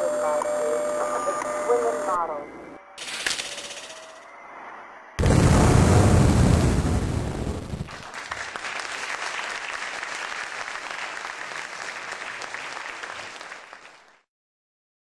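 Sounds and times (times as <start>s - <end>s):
loud low boom: 5.2s - 7.9s
crowd applauding: 7.9s - 14.2s.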